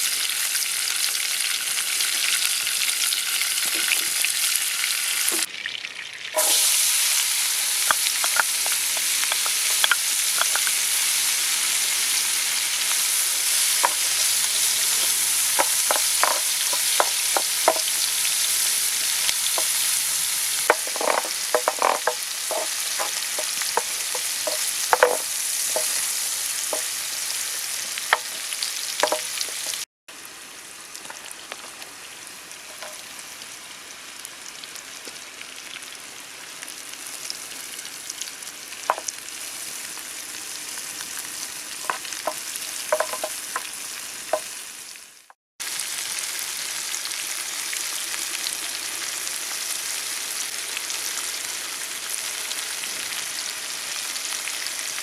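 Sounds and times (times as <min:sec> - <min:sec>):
vegetables sizzling in a pan: 0:00.0 - 0:55.0
utensil stirring clicks and scrapes: 0:07.9 - 0:10.8, 0:14.9 - 0:17.8, 0:20.7 - 0:26.0.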